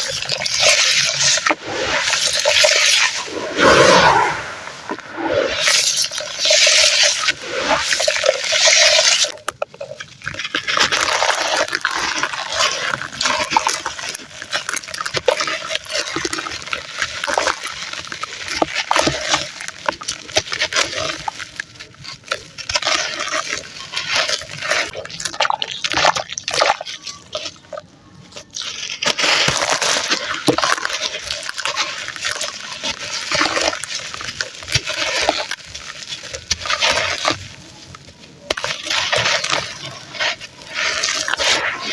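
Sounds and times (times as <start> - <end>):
wet sand squelching: 0.0 - 41.9.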